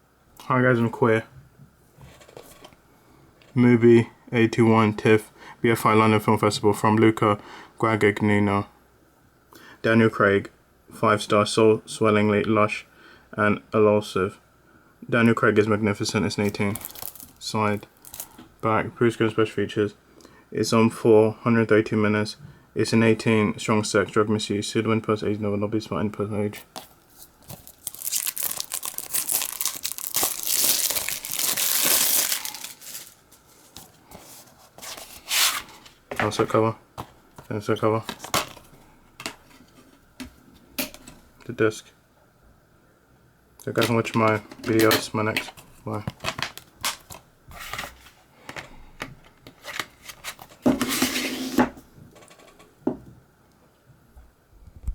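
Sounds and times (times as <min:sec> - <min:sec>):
plastic wrap tearing and crinkling: 0:16.4 - 0:18.4, 0:27.2 - 0:35.6
rubbing or scraping noise: 0:26.6 - 0:36.4, 0:49.6 - 0:51.8.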